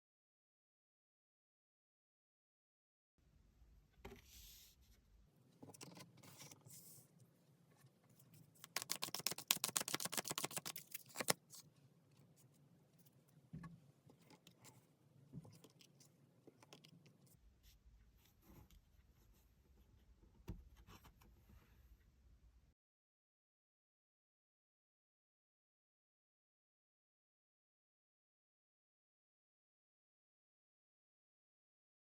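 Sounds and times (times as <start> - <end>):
cards riffled clicking: 8.6 - 11.4
cards sliding and set down: 8.6 - 11.4.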